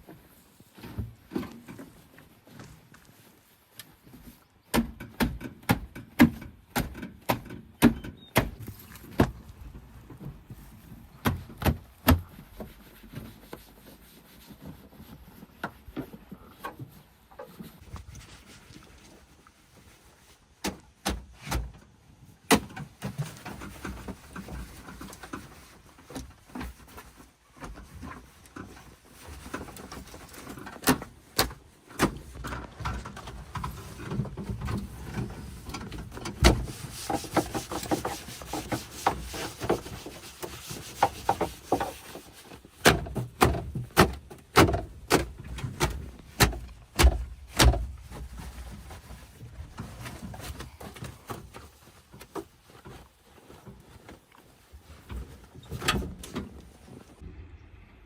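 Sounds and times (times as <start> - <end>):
bucket knocks and clanks: 32.0 - 48.1.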